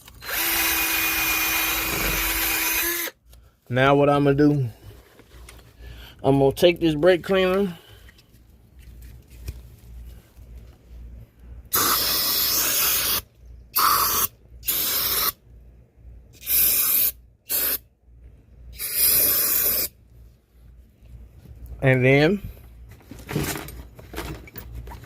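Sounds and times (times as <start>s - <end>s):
aerosol can spraying: 18.8s - 19.9s.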